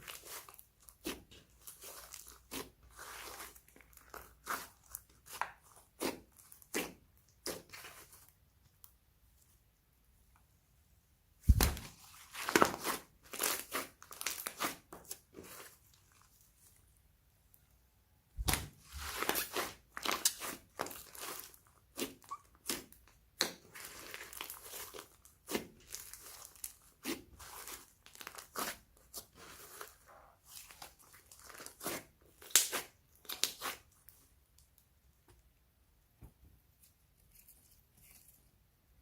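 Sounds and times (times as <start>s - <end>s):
slime squelching and popping: 11.5s - 15.6s.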